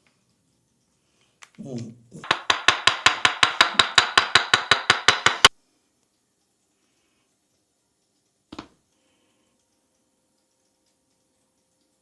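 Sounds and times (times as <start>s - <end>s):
double knock: 2.2s - 5.5s
rapid hand tapping: 2.2s - 5.6s.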